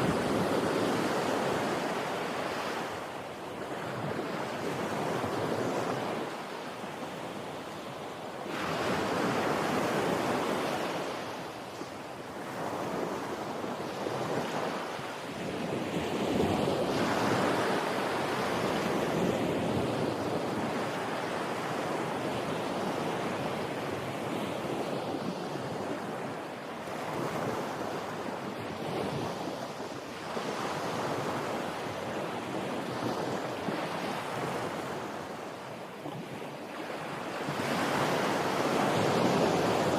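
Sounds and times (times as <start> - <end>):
ocean waves breaking on shore: 0.0 - 39.9.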